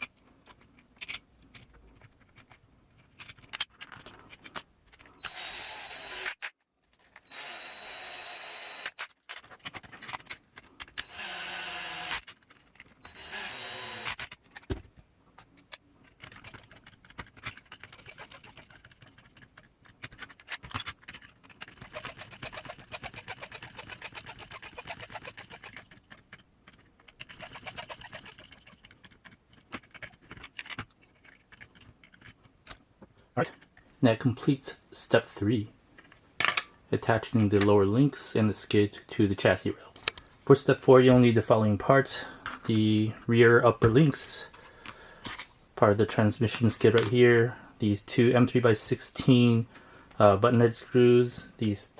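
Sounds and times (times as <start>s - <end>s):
small parts and tools clicking: 0.0s - 34.0s
cordless screwdriver running: 5.2s - 6.4s, 7.3s - 9.0s, 11.0s - 12.2s, 13.0s - 14.3s.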